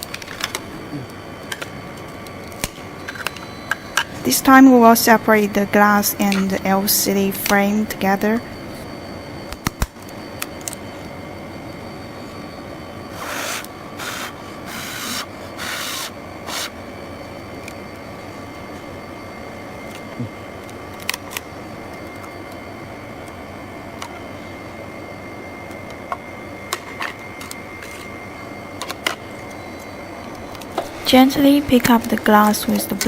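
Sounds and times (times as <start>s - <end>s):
machine humming: 13.0s - 17.3s
short scraping hisses: 13.1s - 16.8s.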